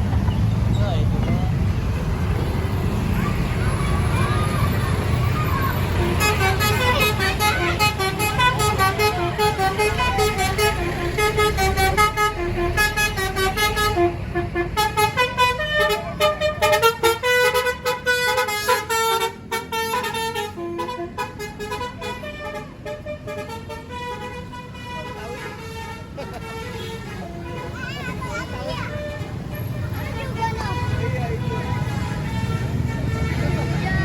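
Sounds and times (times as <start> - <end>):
musical bus horn melody: 5.9 - 27.8, 28.9 - 33.9.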